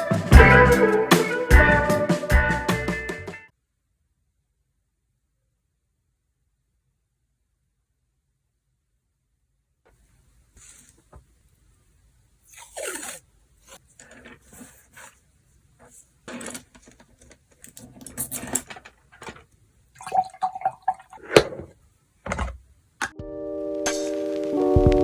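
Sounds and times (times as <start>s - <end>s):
water splashing in a cup: 20.0s - 21.7s.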